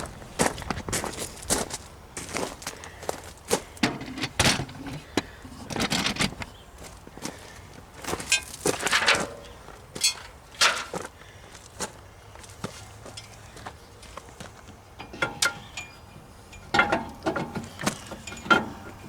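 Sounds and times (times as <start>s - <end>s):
metal parts knocking and clinking: 8.3s - 11.0s, 15.0s - 19.0s.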